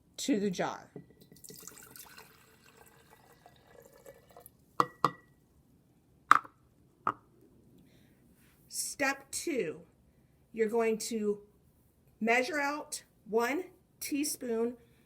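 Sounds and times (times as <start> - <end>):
cup and jar clinking: 1.0 - 5.4
water pouring into jar: 1.2 - 4.6.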